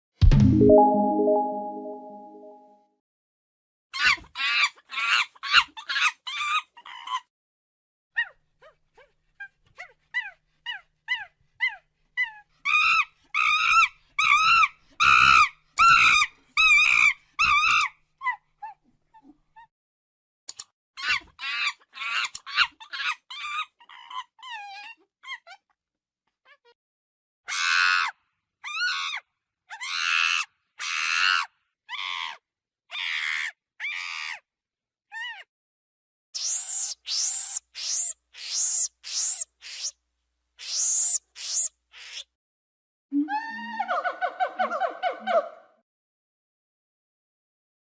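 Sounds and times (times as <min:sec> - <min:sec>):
monkey high-pitched calls: 0:04.0 - 0:07.3, 0:09.8 - 0:18.4, 0:21.0 - 0:25.6, 0:27.5 - 0:34.4, 0:36.4 - 0:40.0, 0:40.6 - 0:42.3
monkey calling: 0:36.4 - 0:39.9, 0:40.6 - 0:42.3.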